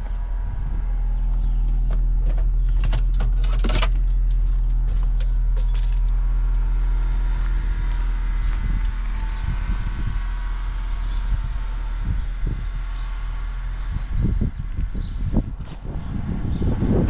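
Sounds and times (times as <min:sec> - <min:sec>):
vehicle engine idling: 0:00.0 - 0:17.0
metallic jingling and clicks: 0:02.7 - 0:09.7.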